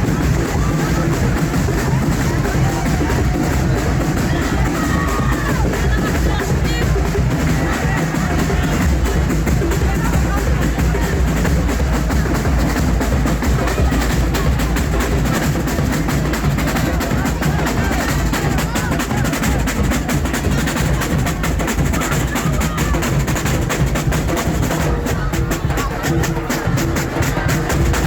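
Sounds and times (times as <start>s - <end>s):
percussion-driven music: 0.0s - 28.0s.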